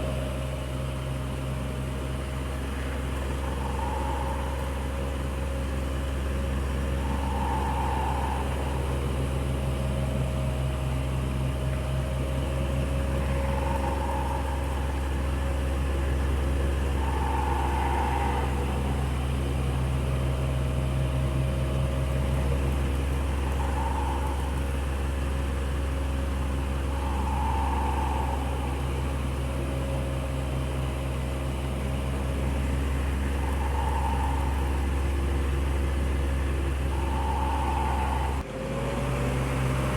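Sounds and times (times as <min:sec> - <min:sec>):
electric fan humming: 0:00.8 - 0:38.4
soft mid-pitched tone: 0:12.5 - 0:31.1, 0:31.9 - 0:38.4.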